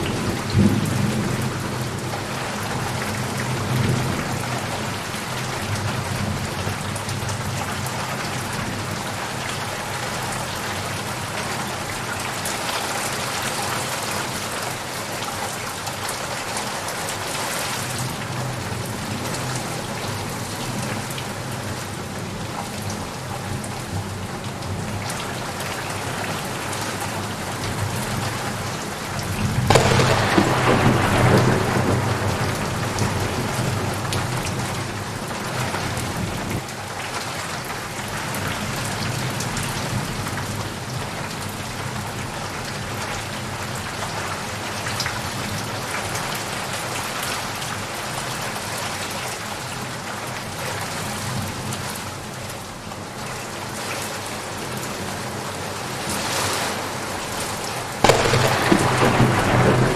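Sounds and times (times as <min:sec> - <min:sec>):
steady rain: 0:00.0 - 0:59.9
thunder rolling: 0:29.6 - 0:36.6, 0:56.8 - 0:59.9.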